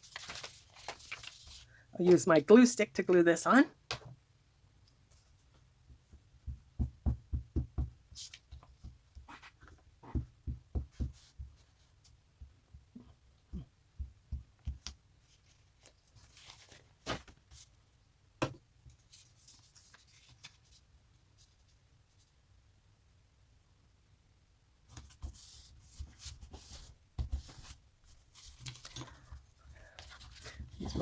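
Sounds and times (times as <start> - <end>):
paper rustling: 0.0 - 2.2, 15.3 - 17.7, 19.0 - 20.8, 24.9 - 31.0.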